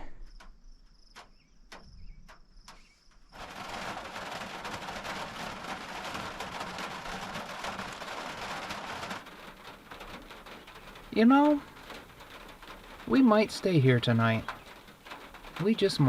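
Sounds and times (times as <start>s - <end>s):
heavy rain hissing: 3.4s - 16.0s.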